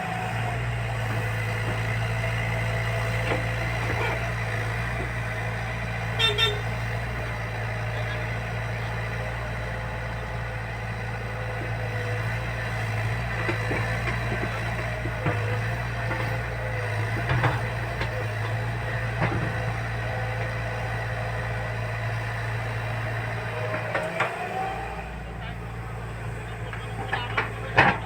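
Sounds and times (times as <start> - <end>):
diesel engine running: 0.0 - 28.0
short horn toots: 6.2 - 6.7.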